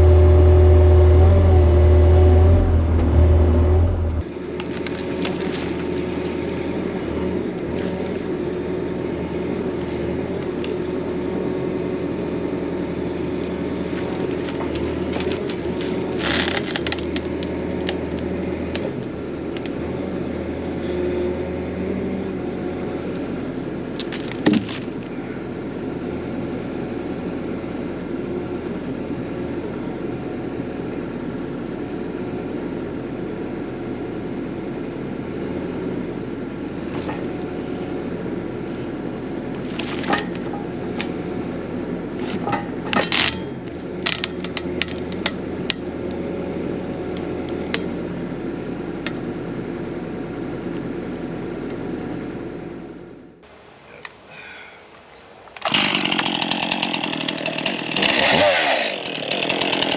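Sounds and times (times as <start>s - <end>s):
wood cracking: 0.0s - 4.2s
excavator engine running: 0.0s - 4.3s.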